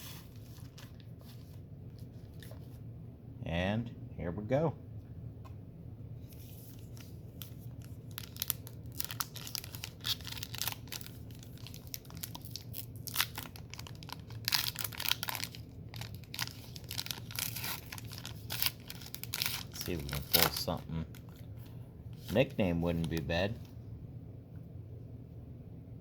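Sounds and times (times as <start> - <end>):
wrappers tearing and crinkling: 6.7 - 21.4.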